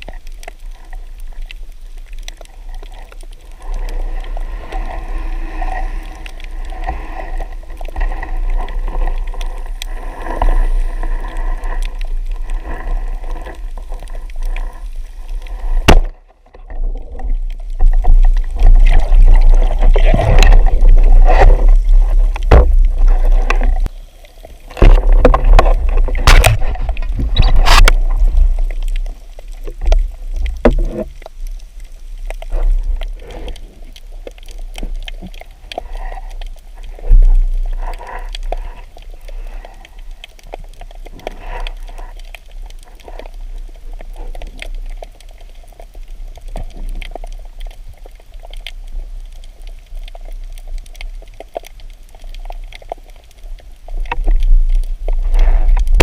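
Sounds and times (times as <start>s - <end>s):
low rumble of water: 0.0s - 56.0s
water rushing and gurgling: 0.0s - 56.0s
sharp clicks and knocks: 24.8s - 28.0s.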